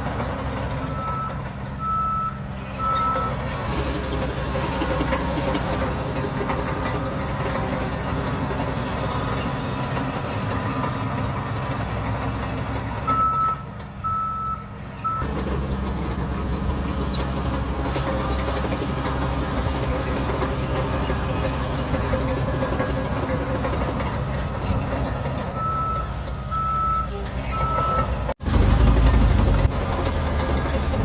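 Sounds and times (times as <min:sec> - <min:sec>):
diesel engine running under load: 0:00.0 - 0:31.0
reversing alarm beeps: 0:00.9 - 0:03.4, 0:13.1 - 0:15.3, 0:25.6 - 0:28.2.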